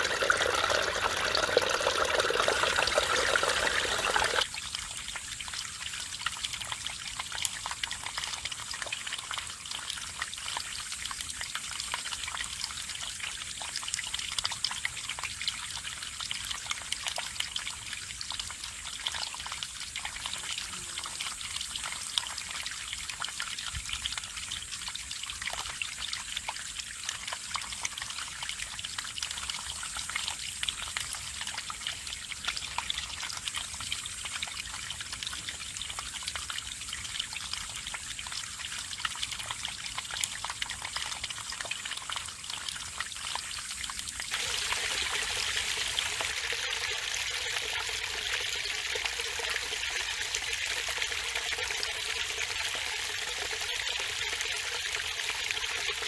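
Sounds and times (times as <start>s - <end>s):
stream splashing over rocks: 0.0s - 5.4s, 25.3s - 56.0s
water drips and plinks: 21.2s - 56.0s.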